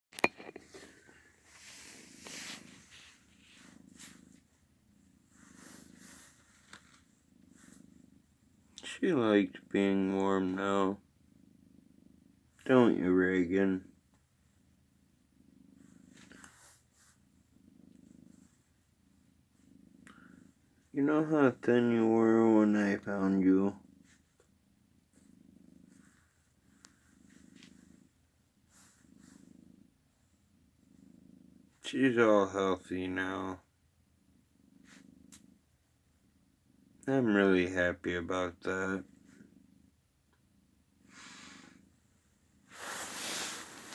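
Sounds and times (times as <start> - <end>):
rustling: 0.2 - 8.7, 41.1 - 43.9
cat purring: 0.2 - 43.9.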